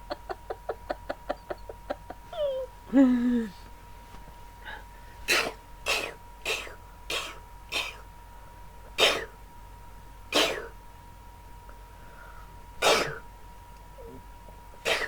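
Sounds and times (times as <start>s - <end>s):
person fake sneezing: 5.3s - 8.0s, 9.0s - 9.3s, 10.4s - 10.7s, 12.8s - 13.2s.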